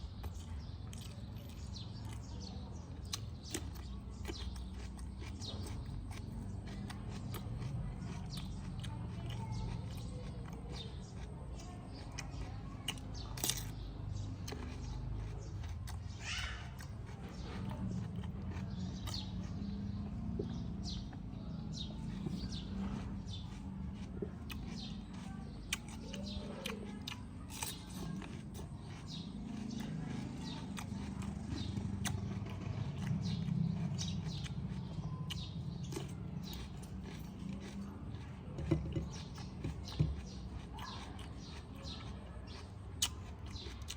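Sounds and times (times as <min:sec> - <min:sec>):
small birds chirping: 0:00.0 - 0:43.9
eating clicks and taps: 0:35.4 - 0:43.9.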